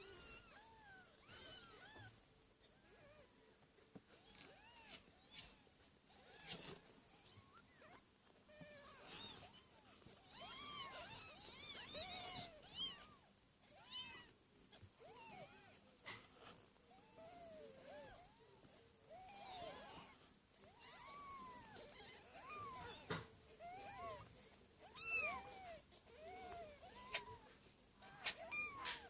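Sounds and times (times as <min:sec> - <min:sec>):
kittens mewing: 0:16.9 - 0:29.0.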